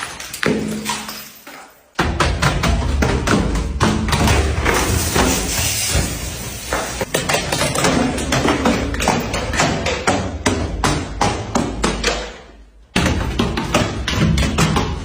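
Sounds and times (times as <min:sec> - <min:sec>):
glass bottles smashing: 0:00.0 - 0:02.0.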